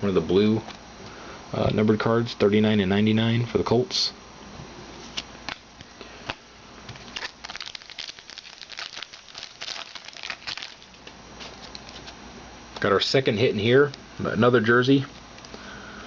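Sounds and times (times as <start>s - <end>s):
card wrappers crinkling and tearing: 7.0s - 12.2s.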